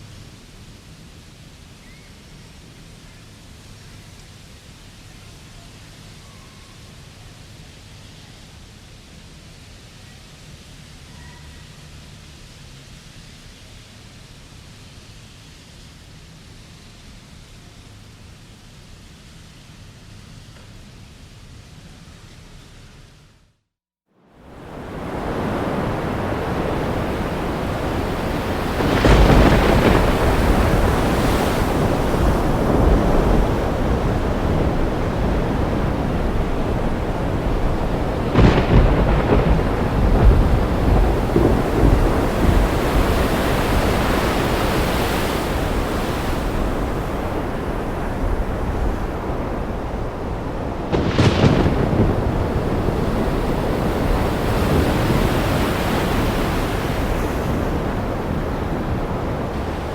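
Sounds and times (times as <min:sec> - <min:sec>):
heavy rain: 0:24.3 - 0:59.9
thunder claps: 0:24.7 - 0:59.9.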